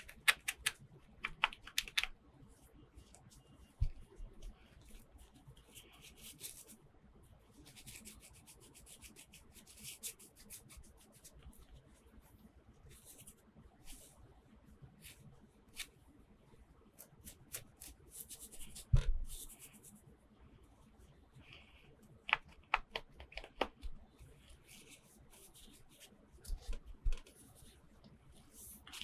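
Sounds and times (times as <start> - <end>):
hands rustling toy packaging: 0.0 - 2.1
plastic toy parts clicking: 0.0 - 2.1.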